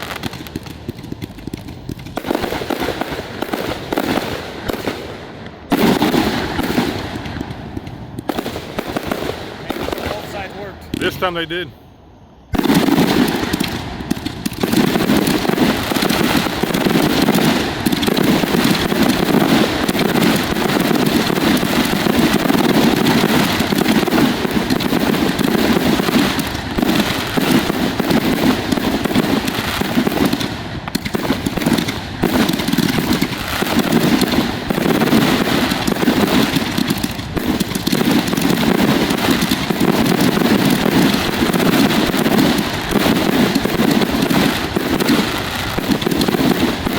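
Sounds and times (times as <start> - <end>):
fireworks bursting: 0.0 - 46.9.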